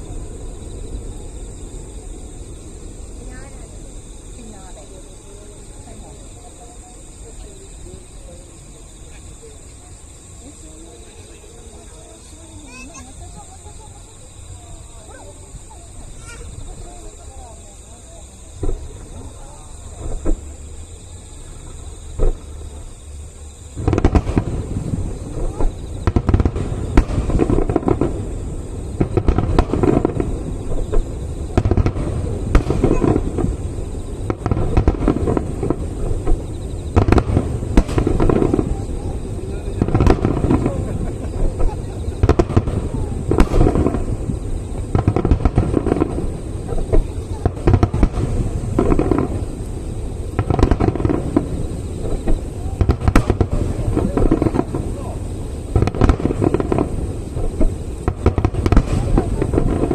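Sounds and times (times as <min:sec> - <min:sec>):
fireworks bursting and crackling: 0:00.0 - 0:59.9
loud firework bangs: 0:00.0 - 0:59.9.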